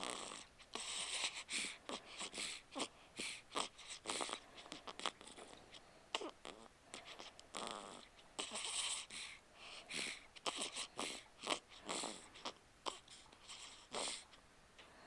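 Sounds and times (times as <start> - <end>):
baby snoring and snorting: 0.0 - 14.4.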